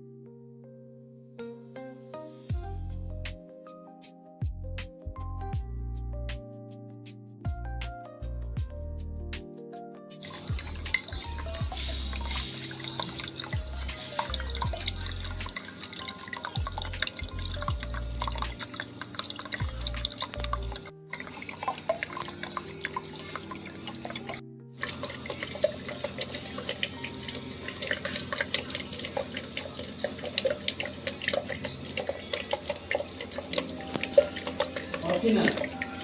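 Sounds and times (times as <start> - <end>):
background music: 0.0 - 36.0
fountain water splashing and trickling: 10.2 - 36.0.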